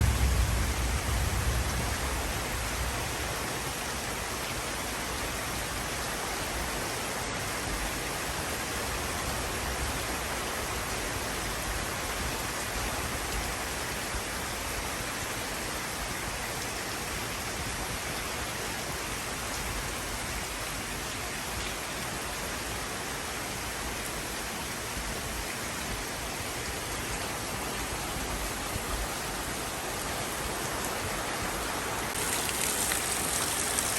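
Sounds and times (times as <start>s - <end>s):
low rumble: 0.0s - 3.1s
steady rain falling: 0.0s - 33.9s.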